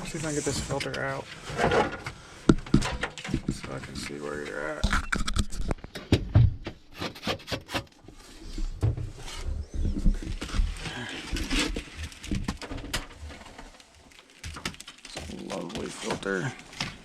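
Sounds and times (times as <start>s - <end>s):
air filter clunking and scraping: 0.0s - 6.8s.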